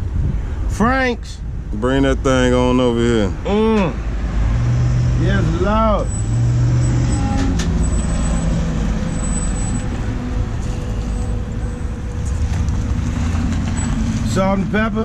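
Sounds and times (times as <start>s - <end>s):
vehicle engine idling: 7.1s - 15.0s.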